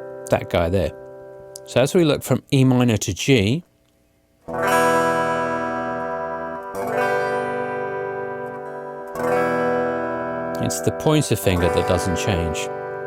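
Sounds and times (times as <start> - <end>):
acoustic guitar chords strummed: 4.4 - 13.0.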